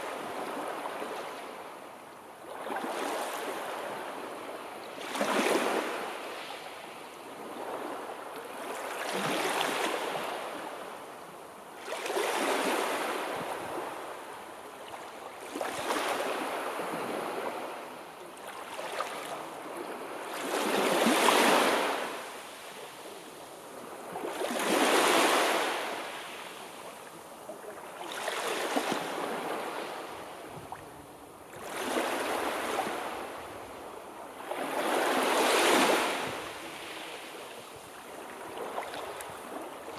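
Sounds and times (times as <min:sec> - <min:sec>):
sea waves rushing: 0:34.6 - 0:39.9.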